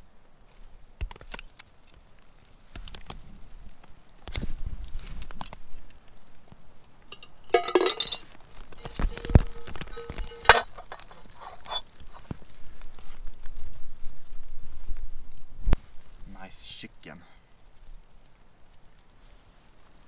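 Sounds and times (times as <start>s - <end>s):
metal cookware clinking: 7.1s - 8.2s, 8.8s - 11.8s.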